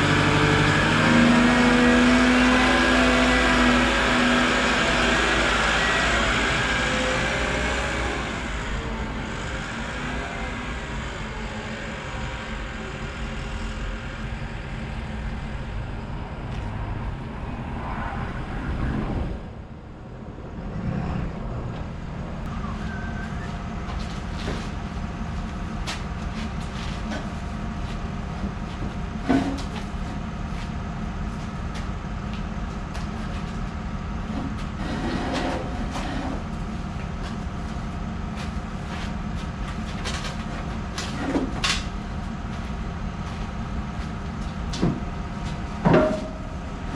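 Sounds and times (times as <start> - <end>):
vehicle engine running: 0.0 - 34.8.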